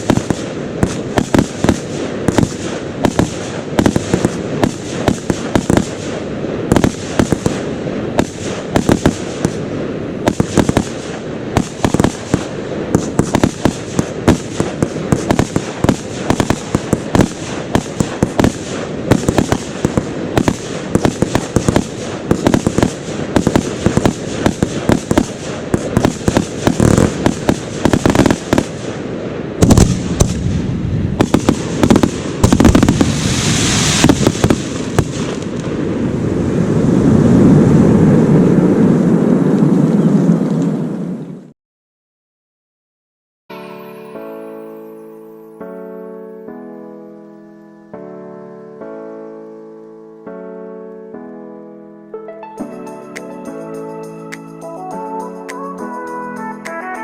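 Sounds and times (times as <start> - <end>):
firework bangs: 0.0 - 39.7.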